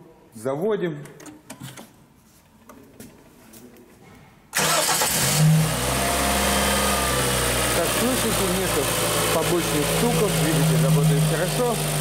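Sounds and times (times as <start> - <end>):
car engine starting and idling: 4.6 - 12.0.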